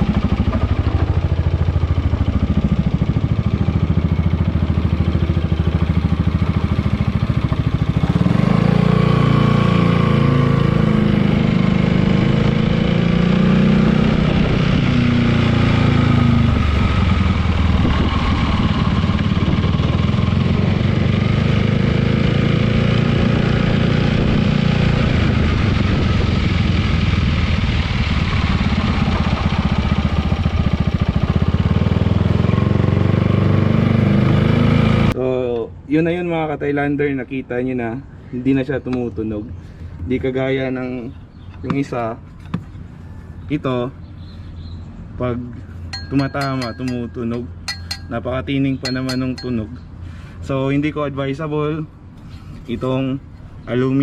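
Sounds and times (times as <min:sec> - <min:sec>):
scooter engine revving: 0:00.0 - 0:35.2.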